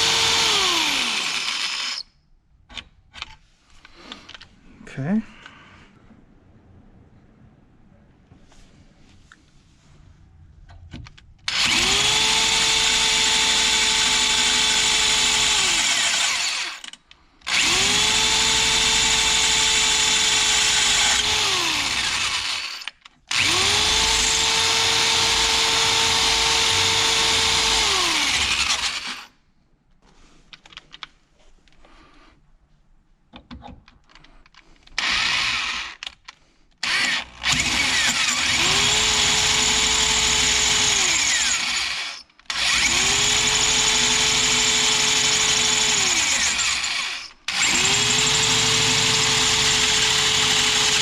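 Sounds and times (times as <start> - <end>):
electric drill boring metal: 0.0 - 2.0, 11.5 - 29.3, 35.0 - 36.0, 36.8 - 51.0.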